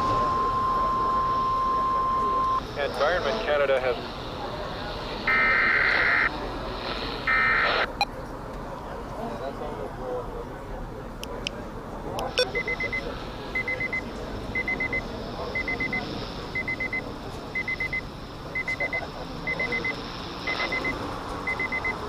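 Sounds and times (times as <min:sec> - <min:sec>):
quick high alarm beeps: 0:00.0 - 0:02.6, 0:12.3 - 0:14.0, 0:14.6 - 0:16.0, 0:16.6 - 0:22.0
steady hiss: 0:02.6 - 0:07.9, 0:12.9 - 0:22.0.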